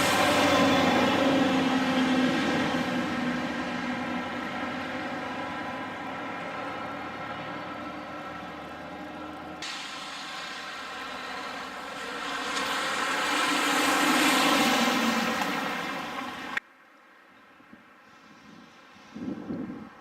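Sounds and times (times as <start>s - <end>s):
engine buzzing drone: 0.0s - 16.6s.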